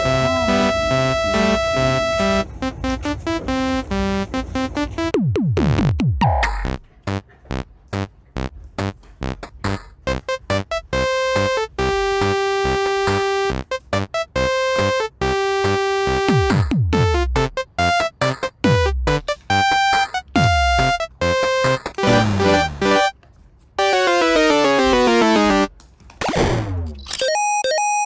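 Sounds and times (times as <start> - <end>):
bouncy synthesizer melody: 0.0 - 23.1, 23.8 - 25.7
drum-machine beat: 0.0 - 23.1, 23.8 - 25.7
falling pitch-drop effect: 17.9 - 23.1.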